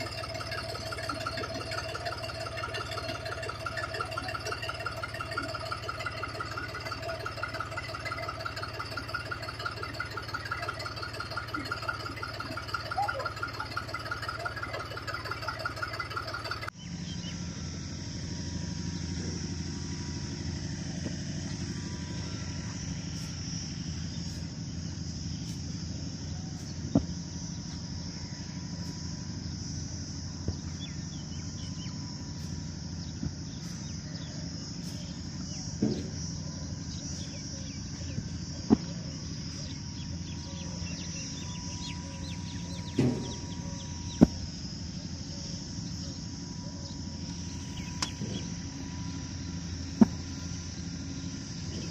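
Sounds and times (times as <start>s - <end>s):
engine idling: 0.0s - 51.9s
high insect buzz: 16.9s - 51.9s.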